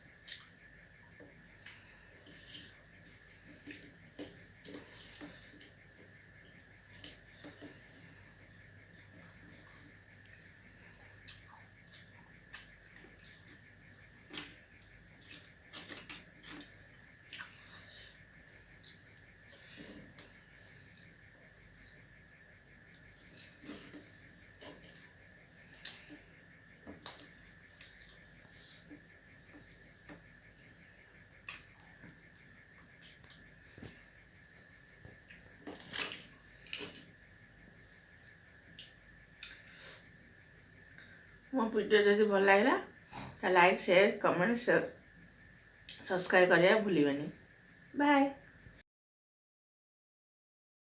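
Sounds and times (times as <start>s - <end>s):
crickets chirping: 0.0s - 48.8s.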